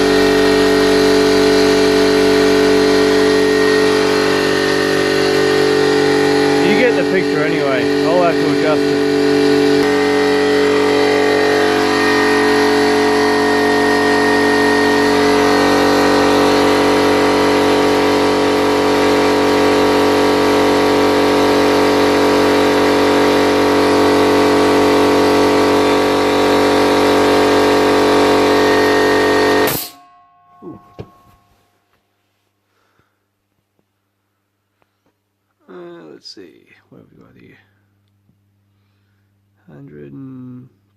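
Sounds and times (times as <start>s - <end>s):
air compressor running: 0.0s - 30.0s.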